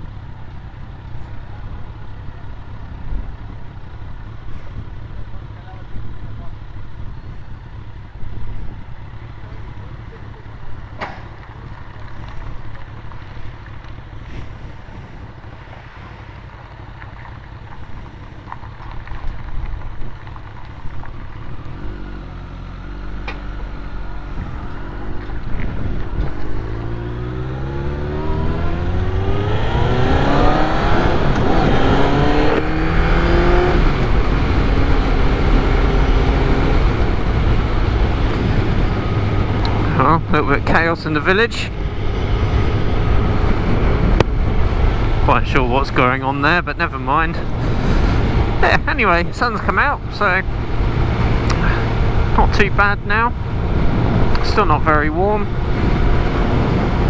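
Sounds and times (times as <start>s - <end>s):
motorcycle engine accelerating: 0.0s - 57.0s
wind noise: 10.5s - 16.6s, 22.9s - 57.0s.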